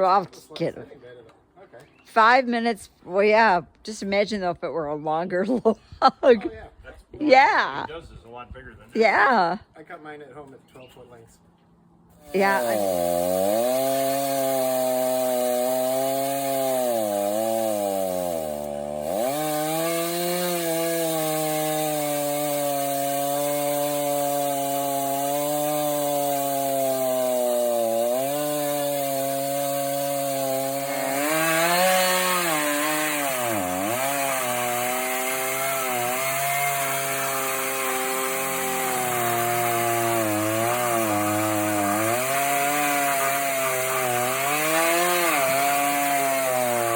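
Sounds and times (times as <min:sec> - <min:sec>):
chainsaw ripping a log: 0:12.2 - 0:46.9.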